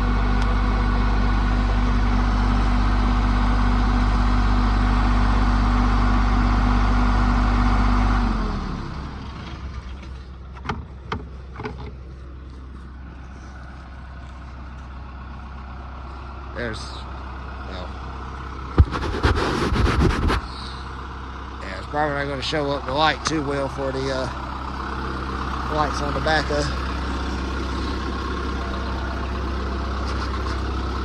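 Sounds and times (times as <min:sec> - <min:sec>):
low engine hum: 0:22.8 - 0:31.0.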